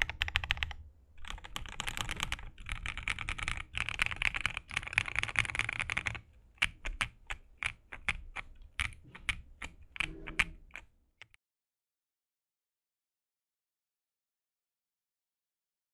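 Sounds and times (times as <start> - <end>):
mechanical keyboard typing: 0.0 - 11.4.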